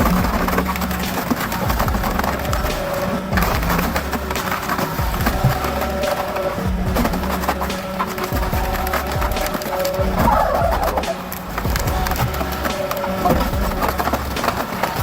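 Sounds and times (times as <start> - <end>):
background music with bass: 0.0 - 15.0
wood cracking and snapping: 0.0 - 15.0.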